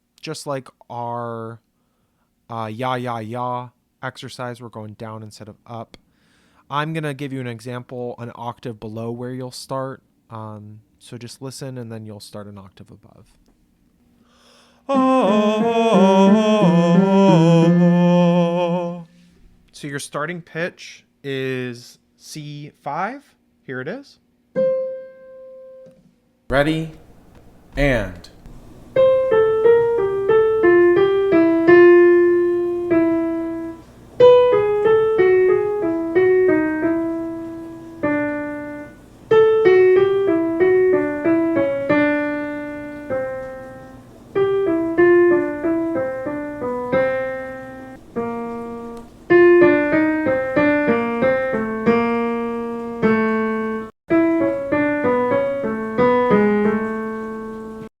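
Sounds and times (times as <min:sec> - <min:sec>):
piano scale runs: 0:26.5 - 0:57.9.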